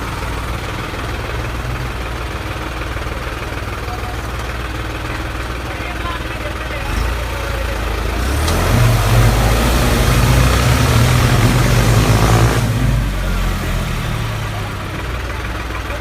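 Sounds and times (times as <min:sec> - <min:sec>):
vehicle engine revving: 0:06.5 - 0:16.0.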